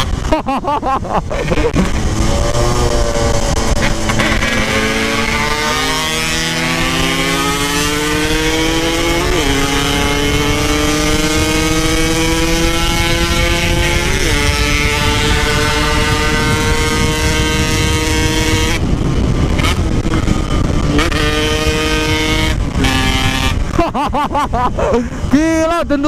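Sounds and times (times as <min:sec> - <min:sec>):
motorcycle engine accelerating: 0:00.0 - 0:25.6.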